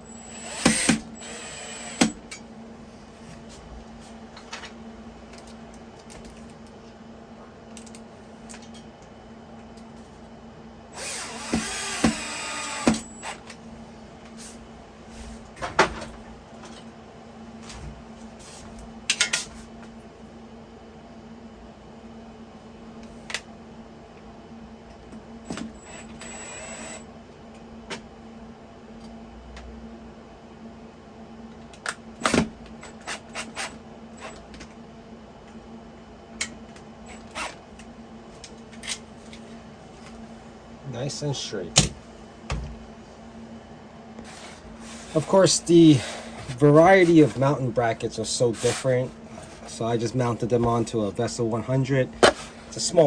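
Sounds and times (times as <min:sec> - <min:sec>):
power drill running: 0:00.0 - 0:02.2, 0:10.9 - 0:13.4, 0:25.8 - 0:27.1
steady low hum: 0:33.8 - 0:53.0.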